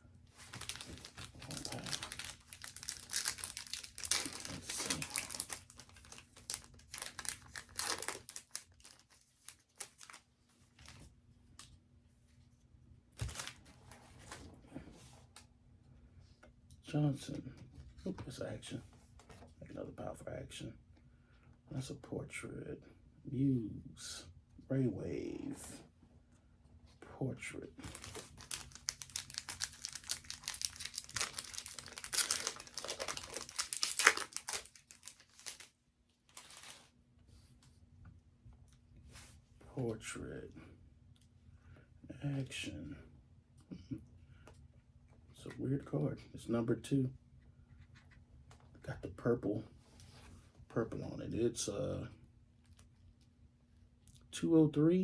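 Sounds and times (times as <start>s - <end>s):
wrapper crinkling: 0.4s - 10.2s, 27.8s - 36.9s.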